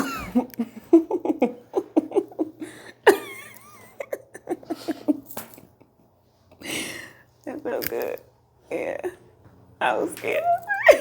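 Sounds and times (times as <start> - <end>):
woman laughing: 0.0 - 5.3, 10.7 - 11.0.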